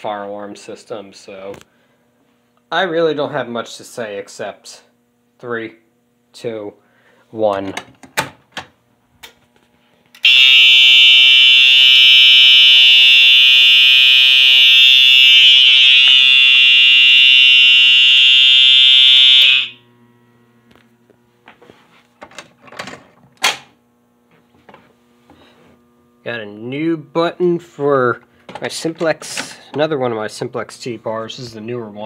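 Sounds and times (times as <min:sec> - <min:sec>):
fire alarm high-pitched tone: 0:10.2 - 0:20.0.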